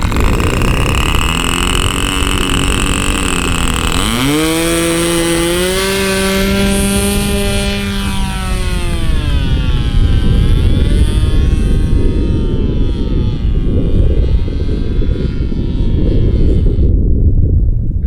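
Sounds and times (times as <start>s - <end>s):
model plane engine running: 0.0s - 17.1s
wind rumble on microphone: 0.0s - 18.0s.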